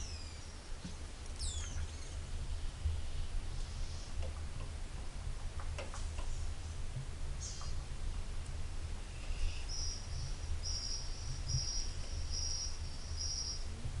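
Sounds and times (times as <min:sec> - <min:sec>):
low steady rumble: 0:00.0 - 0:14.0
insect buzzy calls: 0:09.1 - 0:13.7.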